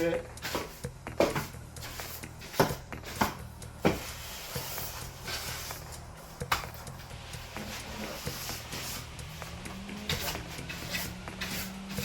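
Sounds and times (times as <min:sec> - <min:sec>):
broom brushing: 0:00.4 - 0:12.0
broom knocking on frame: 0:02.5 - 0:04.2.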